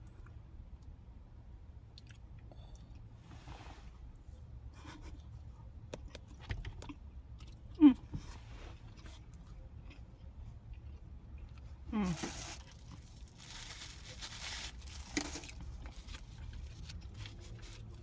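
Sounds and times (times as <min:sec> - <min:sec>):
person chewing food: 0:08.8 - 0:11.9.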